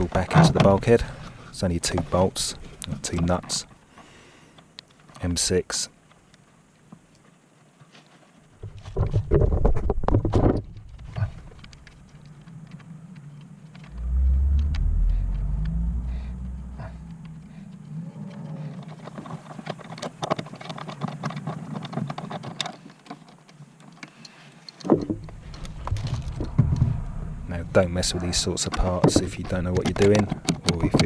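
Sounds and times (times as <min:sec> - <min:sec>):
low rumble: 0:13.8 - 0:18.4, 0:24.9 - 0:29.8.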